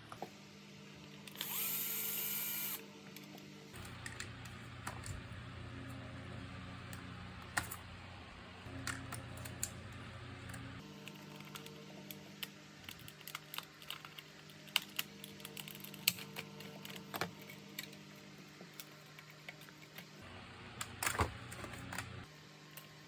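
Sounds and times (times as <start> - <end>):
small parts and tools clicking: 10.5 - 20.2.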